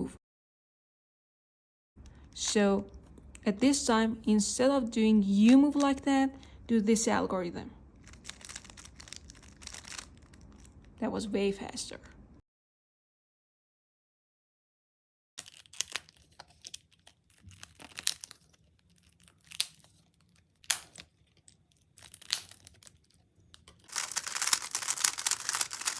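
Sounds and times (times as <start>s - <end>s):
puzzle cube turning clicks: 8.0s - 10.9s, 15.4s - 25.9s.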